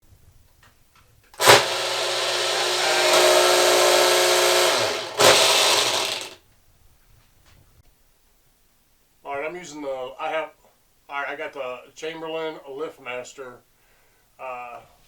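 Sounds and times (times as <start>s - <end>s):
garage door opener motor humming: 1.4s - 6.4s.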